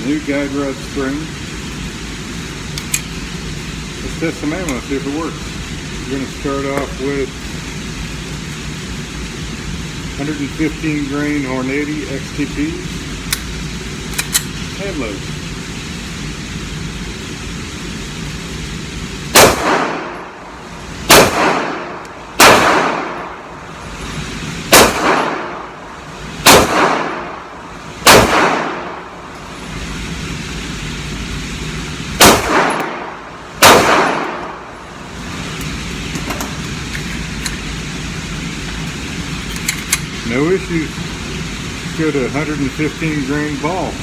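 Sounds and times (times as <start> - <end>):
pistol shots indoors: 19.3 - 20.3, 21.1 - 23.4, 24.7 - 25.7, 26.4 - 29.2, 32.2 - 34.7.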